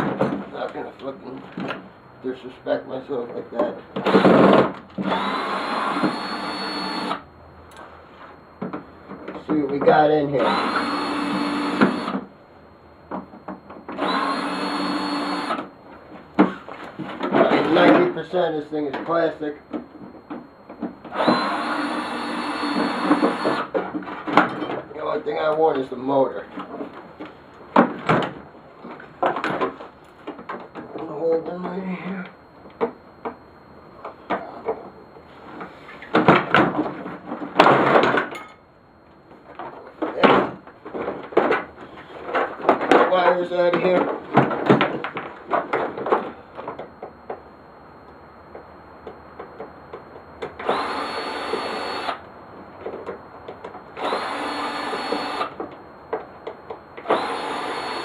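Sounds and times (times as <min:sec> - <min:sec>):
cordless drill running: 0:05.0 - 0:07.2, 0:10.4 - 0:12.2, 0:14.0 - 0:15.7, 0:21.1 - 0:23.7, 0:50.6 - 0:52.2, 0:54.0 - 0:55.6, 0:57.0 - 0:58.0.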